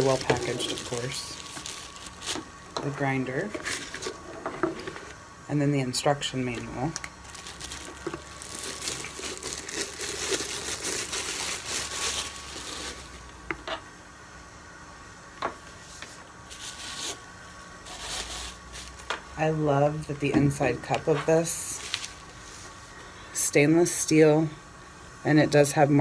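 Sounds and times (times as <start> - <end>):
packaging crinkling and rustling: 0.0 - 2.6, 6.5 - 13.3, 21.1 - 22.8.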